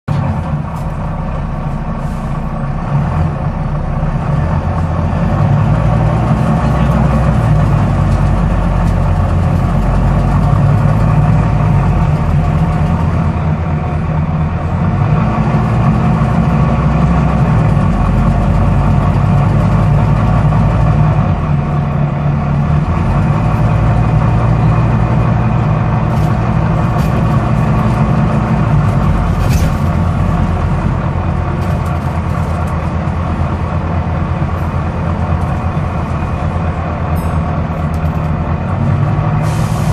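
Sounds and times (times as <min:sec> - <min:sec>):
bus engine droning: 0:00.0 - 0:39.9
clicking noise from bus: 0:06.5 - 0:13.2, 0:26.0 - 0:33.6, 0:34.6 - 0:36.5, 0:37.1 - 0:39.9.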